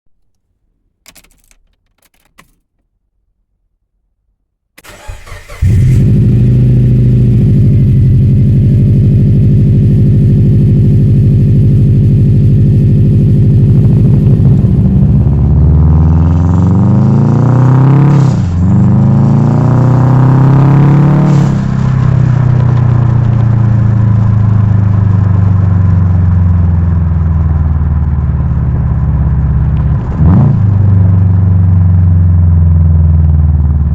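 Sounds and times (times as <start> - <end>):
car engine cranking and idling: 4.8 - 17.0, 18.5 - 33.9
engine revving: 4.8 - 23.9, 29.6 - 31.3
car pulling away and shifting gears: 4.8 - 33.9.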